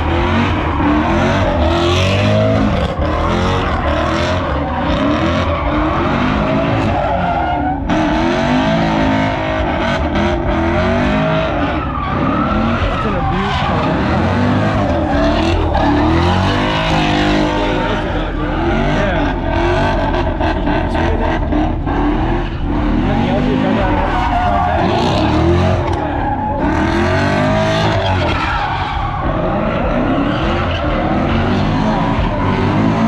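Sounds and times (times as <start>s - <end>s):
car engine revving: 0.0s - 33.0s
tyres squealing: 22.6s - 33.0s.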